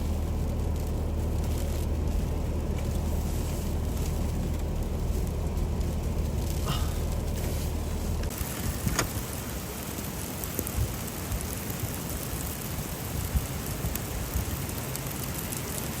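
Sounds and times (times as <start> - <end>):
blizzard wind buffeting microphone: 0.0 - 16.0
small ticks: 8.2 - 15.9.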